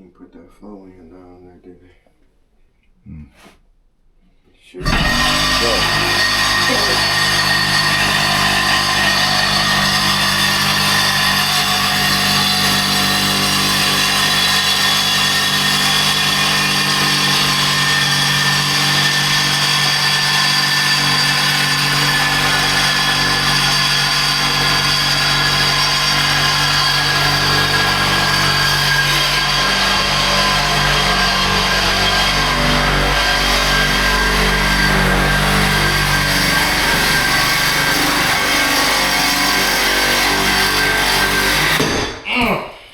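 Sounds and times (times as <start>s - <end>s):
small motor whining: 4.8s - 11.7s.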